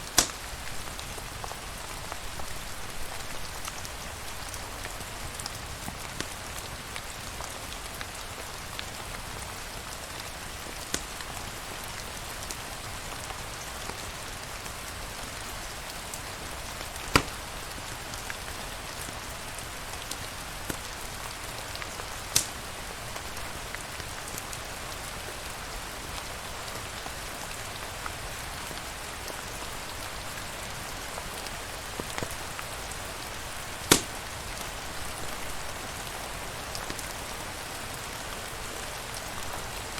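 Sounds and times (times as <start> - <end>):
steady rain falling: 0.0 - 39.9
sharp pops or clicks: 0.1 - 0.4, 10.9 - 11.1, 17.1 - 17.4, 22.4 - 22.6, 33.9 - 34.2.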